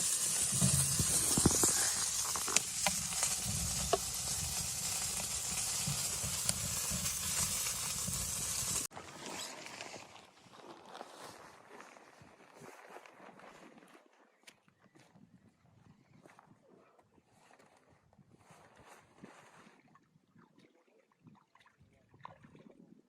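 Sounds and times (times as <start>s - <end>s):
sizzling hiss with pops: 0.0s - 8.9s.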